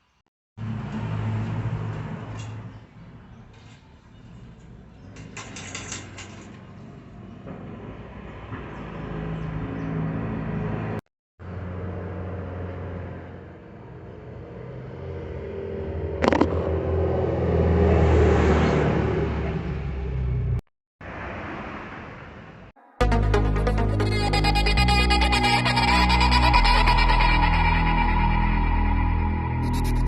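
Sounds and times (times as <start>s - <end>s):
vehicle engine humming: 6.9s - 20.6s, 23.0s - 30.0s.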